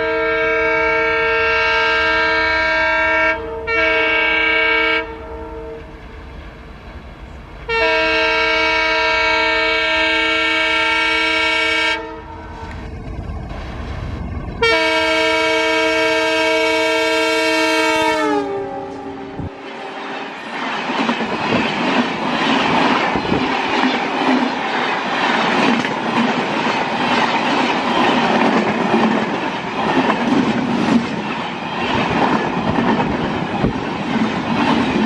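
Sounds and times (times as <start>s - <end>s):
locomotive multi-tone horn: 0.0s - 5.9s, 7.7s - 12.8s, 14.6s - 20.2s
train low rumble: 0.0s - 35.0s.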